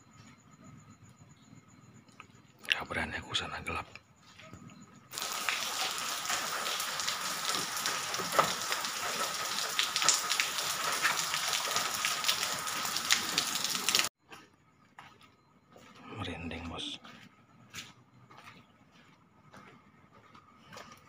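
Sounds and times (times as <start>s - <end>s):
faint steady tone: 0.0s - 5.1s
crackling hiss: 5.1s - 14.1s.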